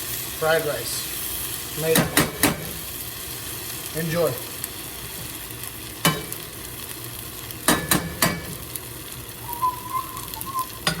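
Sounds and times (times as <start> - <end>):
rice sizzling in a pan: 0.0 - 11.0
metal utensil knocking on pan: 7.7 - 8.6.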